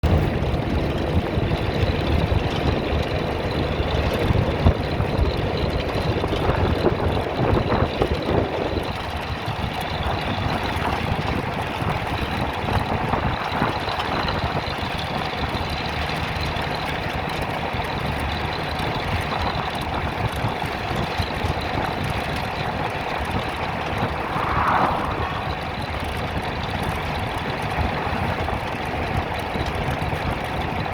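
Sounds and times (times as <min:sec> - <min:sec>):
bus engine running: 0:00.0 - 0:30.9
road rumble: 0:00.0 - 0:30.9.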